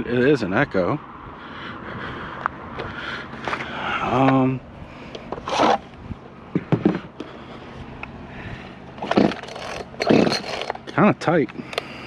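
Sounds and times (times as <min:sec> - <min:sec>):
rasping scrapes: 0:09.0 - 0:10.8
chainsaw clicks and knocks: 0:09.0 - 0:10.9.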